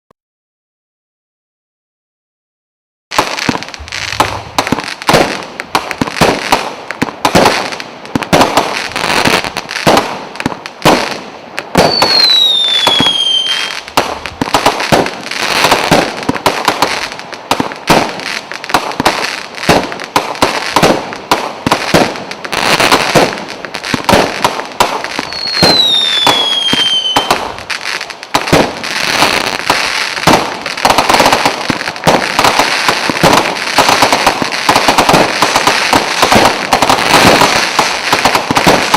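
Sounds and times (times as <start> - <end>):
fireworks firing in rapid barrage: 3.1 - 38.9
high whistle gliding downward: 11.9 - 13.8, 25.3 - 27.3.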